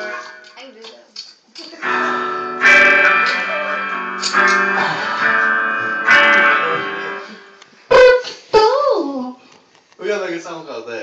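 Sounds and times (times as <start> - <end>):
guitar chords strummed: 0.0 - 0.6, 1.8 - 7.7.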